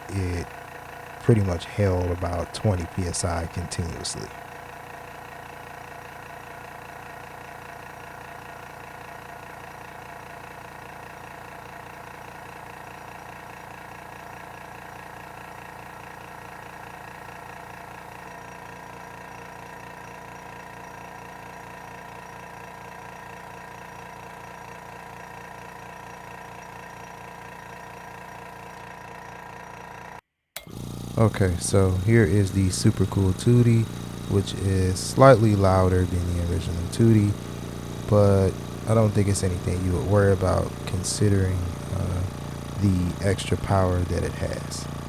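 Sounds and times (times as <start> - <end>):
airbrush compressor pulsing hum: 0.0 - 45.0.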